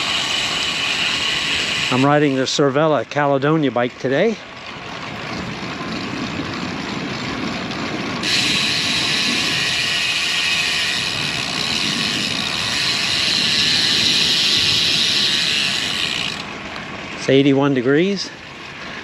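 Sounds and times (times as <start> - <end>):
bicycle freewheel buzzing: 0.0 - 2.8, 5.0 - 16.8
wind and tyre noise: 0.0 - 19.0.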